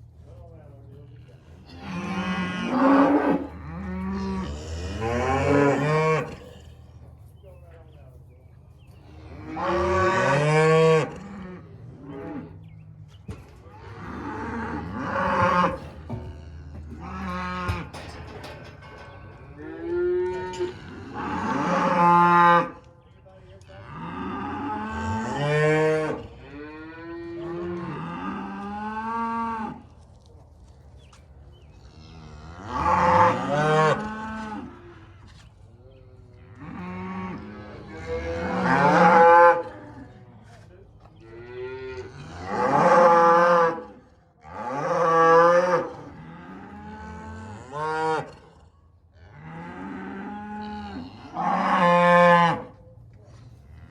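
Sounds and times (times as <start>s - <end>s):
cattle mooing: 1.6s - 7.0s, 13.8s - 22.8s, 36.4s - 40.2s, 41.4s - 48.6s.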